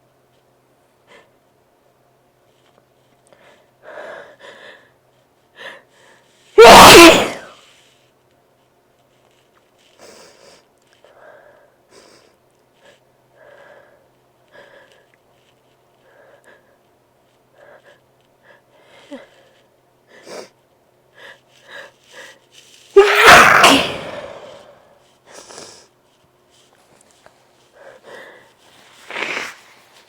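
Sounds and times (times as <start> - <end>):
man sneezing loudly: 6.6 - 7.5, 23.0 - 24.8
nose noises: 23.0 - 24.8, 28.9 - 29.8.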